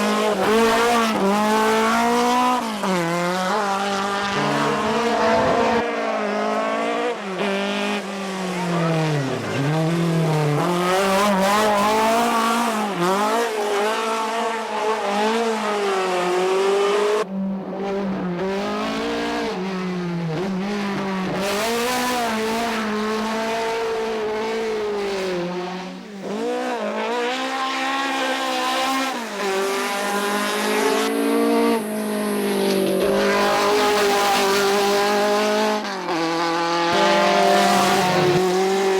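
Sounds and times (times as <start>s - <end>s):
race car engine revving: 0.0s - 38.9s.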